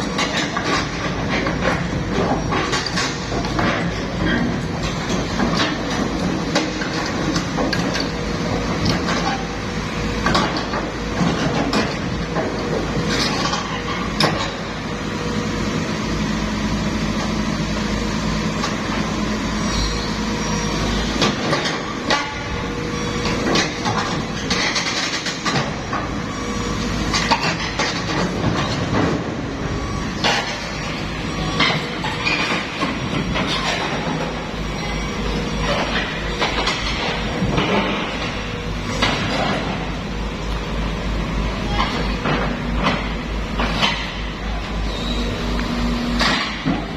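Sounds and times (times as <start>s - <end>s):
excavator diesel engine running: 0.0s - 46.9s
metal track clanks: 27.1s - 40.7s, 41.5s - 45.1s.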